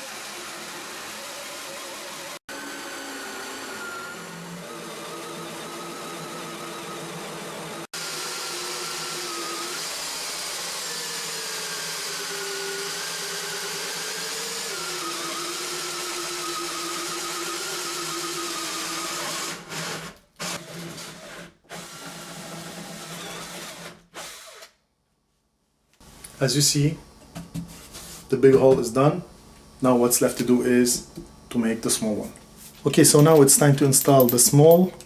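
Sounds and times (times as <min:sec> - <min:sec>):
power drill cutting wood: 0:00.0 - 0:24.8.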